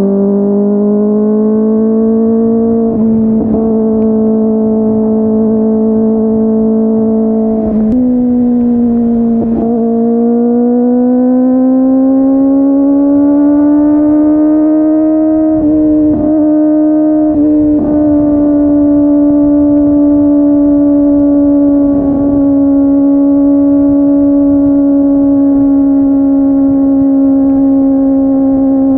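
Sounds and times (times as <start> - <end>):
motorcycle engine at high revs: 0.0 - 28.9.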